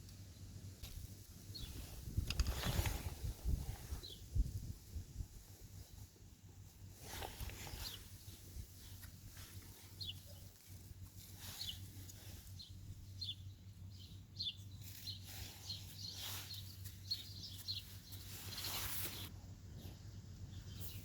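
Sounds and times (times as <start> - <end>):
bird chirping: 9.7 - 10.6, 11.4 - 21.0.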